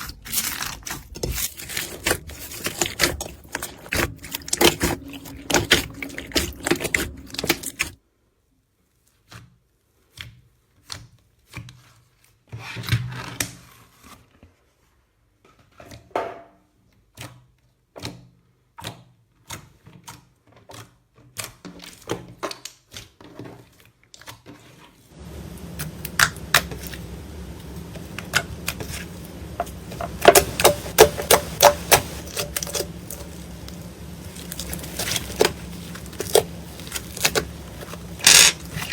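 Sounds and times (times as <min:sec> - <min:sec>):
low steady hum: 0:02.3 - 0:08.0, 0:25.2 - 0:38.9.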